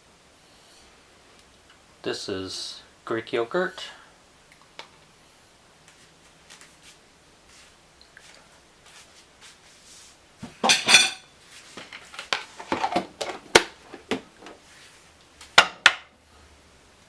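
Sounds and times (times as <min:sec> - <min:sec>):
spoon and dishes clinking: 0:10.6 - 0:11.3.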